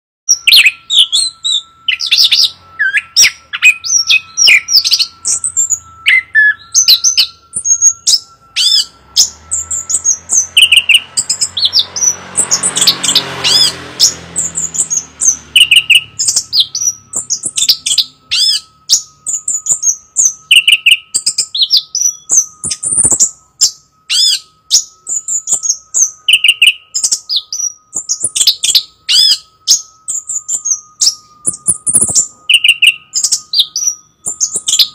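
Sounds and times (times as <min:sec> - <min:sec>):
thrush singing: 0:00.3 - 0:34.9
faint high hum: 0:00.4 - 0:12.2.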